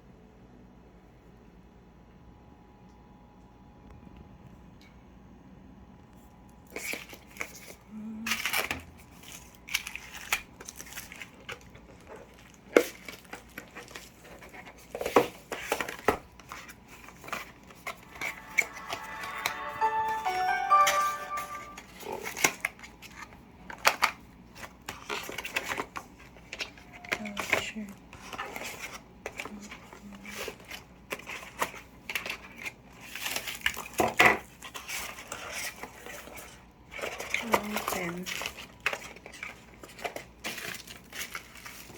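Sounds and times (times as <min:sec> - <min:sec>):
plastic and paper crinkling: 0:06.7 - 0:18.2, 0:23.1 - 0:41.9.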